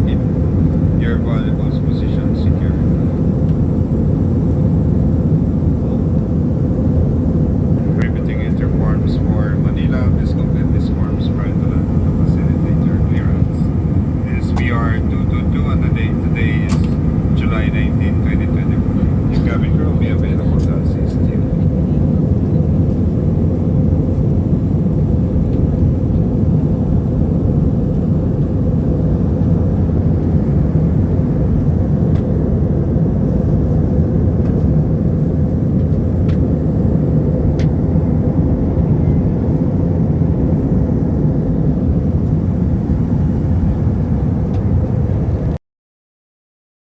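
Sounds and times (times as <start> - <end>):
jet engine cabin rumble: 0.0 - 45.6.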